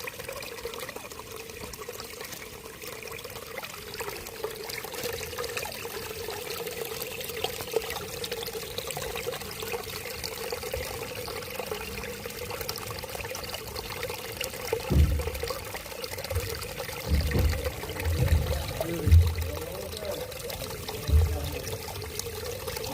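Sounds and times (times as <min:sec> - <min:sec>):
crackling splashes: 0:00.0 - 0:22.9
water pouring and trickling: 0:00.0 - 0:22.9
low thuds: 0:14.9 - 0:15.6, 0:16.3 - 0:19.6, 0:21.0 - 0:21.8.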